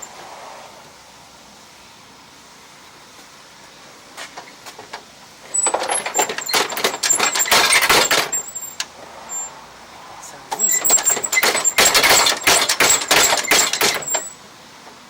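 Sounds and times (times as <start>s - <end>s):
loose metal piece rattling: 5.5s - 8.9s, 10.6s - 14.4s.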